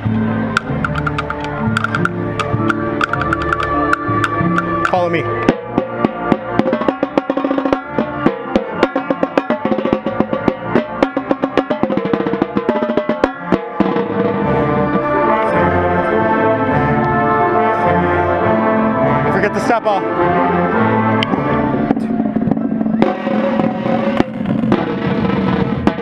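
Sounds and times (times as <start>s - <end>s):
drums and pitched percussion: 0.0s - 15.8s, 21.2s - 26.0s
brass chords: 0.0s - 26.0s.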